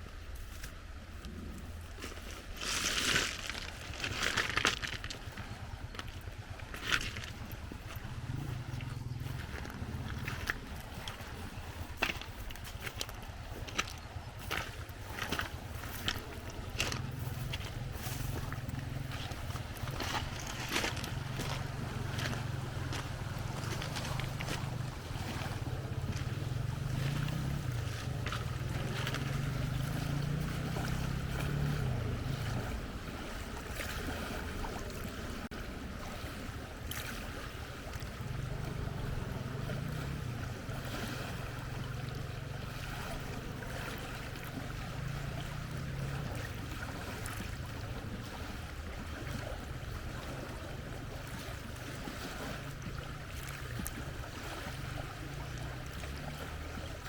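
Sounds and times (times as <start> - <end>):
low hum: 0.0 - 32.8.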